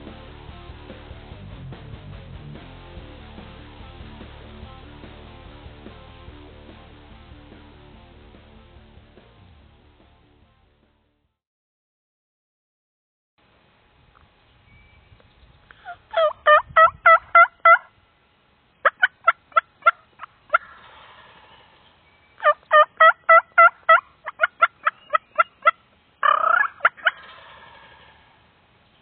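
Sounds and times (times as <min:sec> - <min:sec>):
turkey clucking: 0:15.7 - 0:17.9, 0:18.8 - 0:28.4
turkey yelping: 0:15.7 - 0:17.9, 0:18.8 - 0:21.6, 0:22.4 - 0:28.2
turkey cutting notes: 0:22.4 - 0:28.1.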